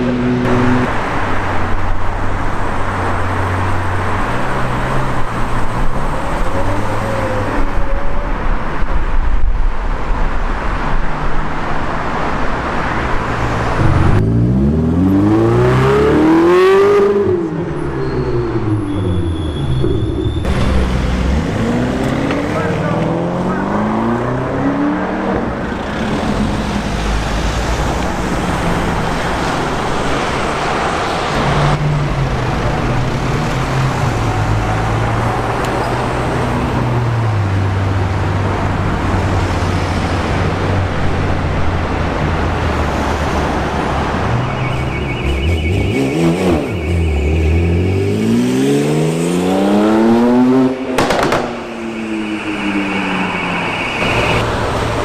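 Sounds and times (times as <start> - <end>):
car engine revving: 13.6 - 17.6, 19.8 - 27.2.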